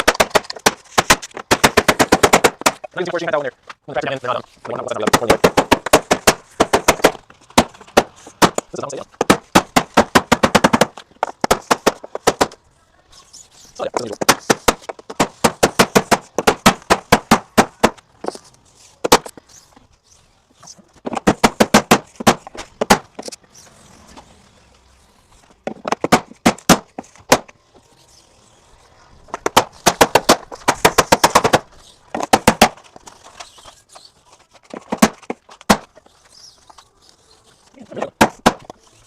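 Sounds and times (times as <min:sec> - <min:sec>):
hammer striking wood: 0:00.0 - 0:02.9, 0:05.1 - 0:12.6, 0:25.6 - 0:27.5, 0:29.4 - 0:32.8, 0:38.2 - 0:38.7.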